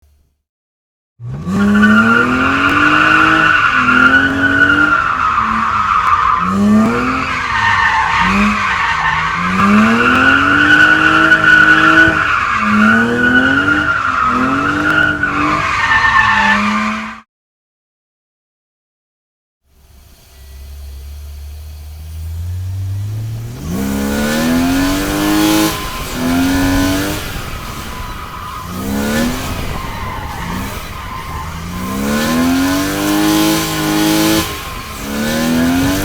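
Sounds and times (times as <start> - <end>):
car engine revving: 1.2 - 17.2, 19.8 - 36.0
tyres squealing: 1.5 - 17.0, 22.8 - 36.0.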